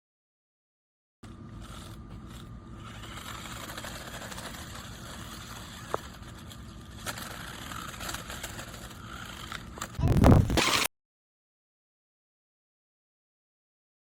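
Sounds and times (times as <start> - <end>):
small electric motor running: 1.5 - 10.6.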